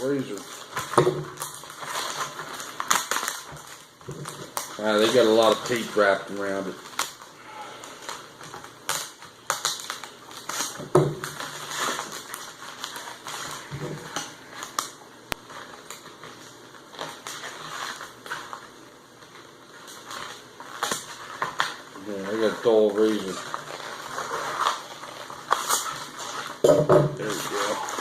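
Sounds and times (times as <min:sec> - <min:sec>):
razor blade scraping packaging: 0:00.0 - 0:03.8, 0:19.8 - 0:26.6
tape and cardboard crackling: 0:00.0 - 0:28.0.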